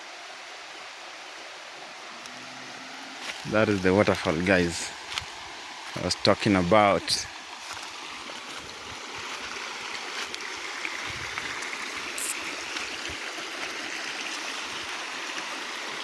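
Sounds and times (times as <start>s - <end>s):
small waterfall and river rushing: 0.0s - 16.0s.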